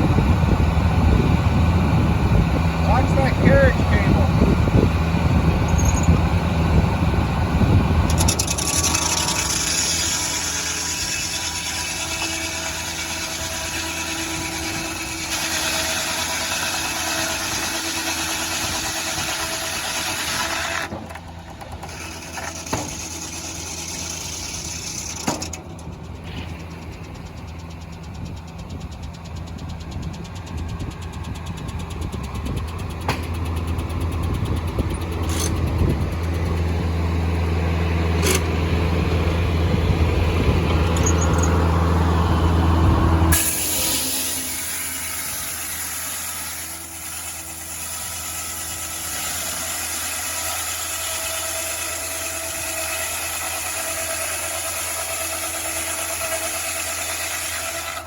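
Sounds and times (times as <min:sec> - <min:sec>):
sawmill engine running: 0:00.0 - 0:58.0
saw blade cutting log: 0:02.9 - 0:04.3, 0:08.0 - 0:29.6, 0:33.1 - 0:37.0, 0:37.7 - 0:39.2, 0:43.1 - 0:58.0.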